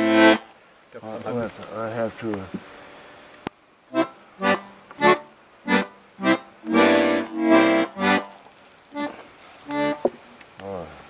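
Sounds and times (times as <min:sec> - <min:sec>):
accordion playing: 0:00.0 - 0:00.5, 0:03.9 - 0:10.2.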